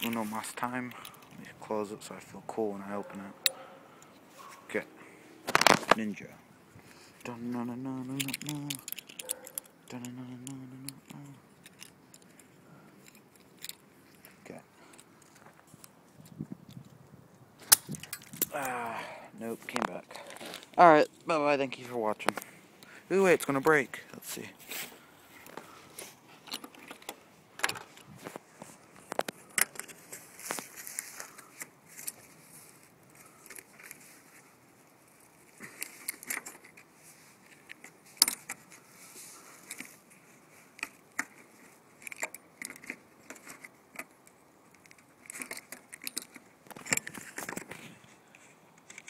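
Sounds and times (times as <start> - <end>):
knife parts clicking and rattling: 0.0 - 1.4, 8.0 - 16.9, 17.7 - 18.6, 40.7 - 47.8.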